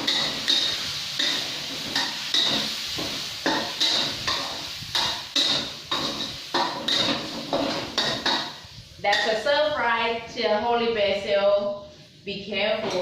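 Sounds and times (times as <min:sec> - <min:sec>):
metal spatula scraping a pan: 0:00.0 - 0:09.4
food sizzling: 0:00.0 - 0:10.3.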